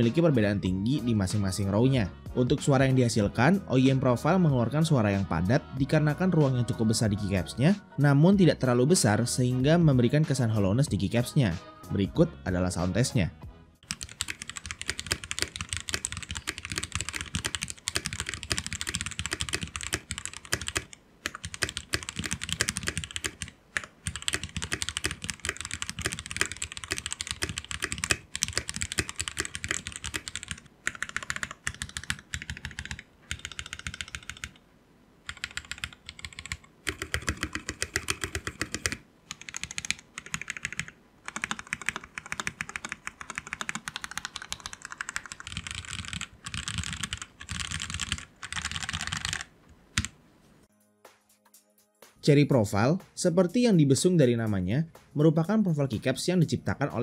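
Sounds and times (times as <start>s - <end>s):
fast mechanical keyboard typing: 13.8s - 34.6s, 35.3s - 50.1s.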